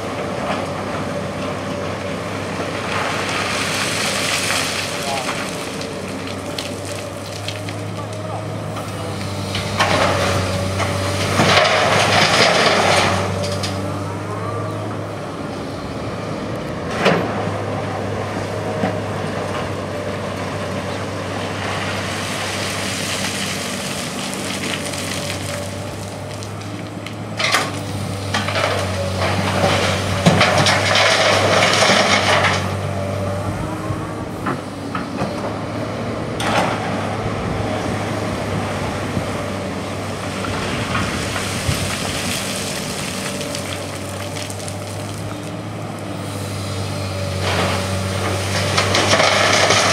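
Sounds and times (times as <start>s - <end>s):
excavator diesel engine droning: 0.0s - 49.9s
rough rasping digging noise: 40.2s - 45.7s.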